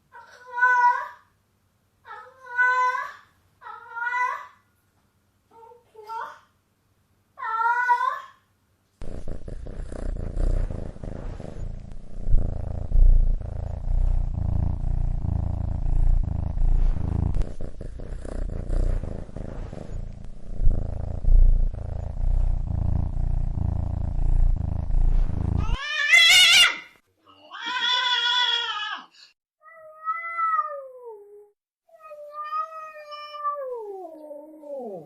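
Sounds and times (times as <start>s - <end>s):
cat purring: 9.0s - 25.8s
cat meowing: 25.6s - 29.1s.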